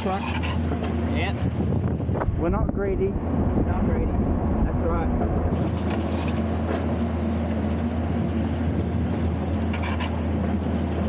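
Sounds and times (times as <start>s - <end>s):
machine drum mechanical hum: 1.8s - 9.5s.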